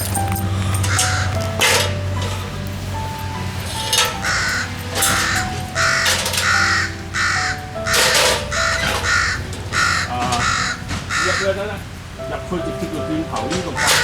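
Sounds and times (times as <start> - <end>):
crow cawing: 0.9 - 1.6, 3.9 - 11.8, 13.8 - 14.0.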